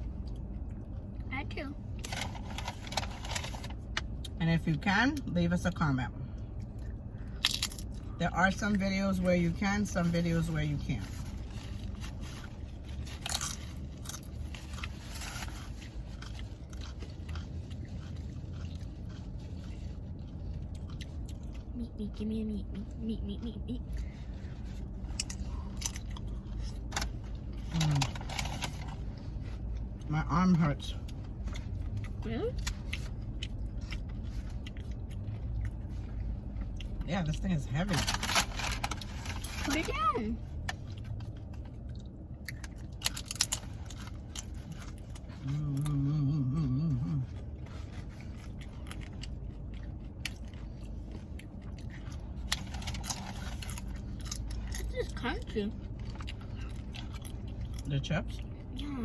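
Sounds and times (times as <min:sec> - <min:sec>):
chewing and crunching: 0:00.0 - 0:59.0
steady low hum: 0:00.0 - 0:59.0
person humming: 0:45.5 - 0:47.2.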